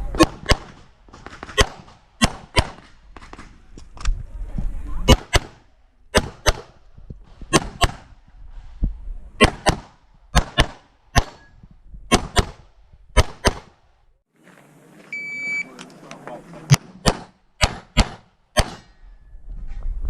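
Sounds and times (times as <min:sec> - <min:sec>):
handgun shots: 0:09.4 - 0:11.5, 0:13.2 - 0:13.8, 0:16.7 - 0:19.0
high electronic beep: 0:15.1 - 0:15.7.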